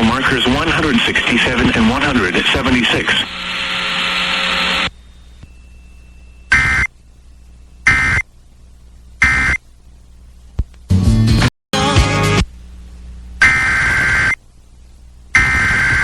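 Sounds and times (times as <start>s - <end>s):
radio station audio: 0.0s - 5.5s, 15.4s - 16.0s
harsh digital squawks: 6.5s - 6.9s, 7.8s - 8.2s, 9.2s - 9.6s, 13.4s - 14.4s, 15.4s - 16.0s.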